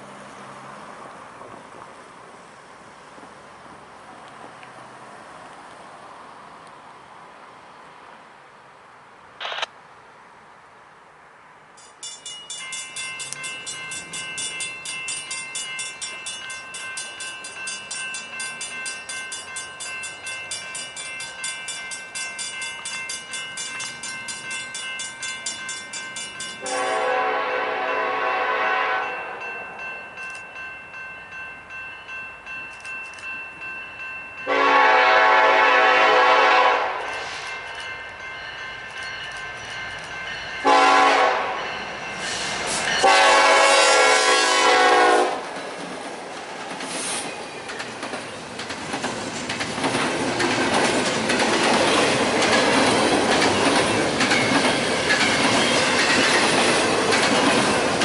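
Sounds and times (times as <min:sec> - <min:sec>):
train wheels clattering on rails: 0:11.8 - 0:27.1, 0:44.9 - 0:58.0
train horn blasts: 0:26.6 - 0:29.4, 0:34.4 - 0:37.5, 0:40.6 - 0:41.7, 0:43.0 - 0:45.5.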